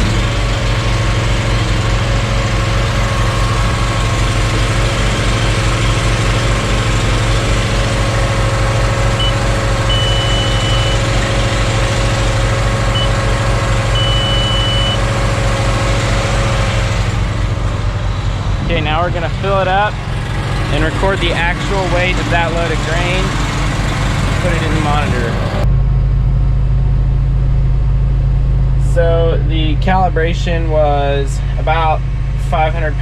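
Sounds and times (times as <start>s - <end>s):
engine running with low throb: 0.0s - 33.0s
high electronic beeps: 9.2s - 11.1s, 12.9s - 13.2s, 13.9s - 15.0s.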